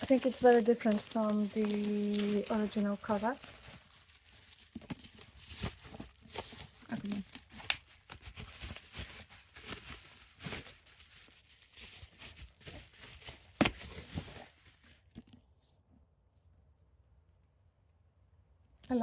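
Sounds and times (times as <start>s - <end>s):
paper packaging rustling: 0.0s - 15.2s.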